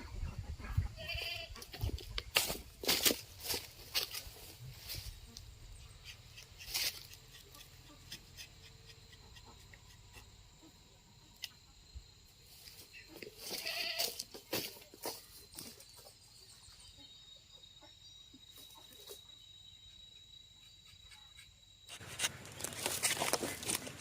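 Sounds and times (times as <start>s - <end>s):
animal bleating: 1.0s - 1.7s, 13.4s - 14.2s.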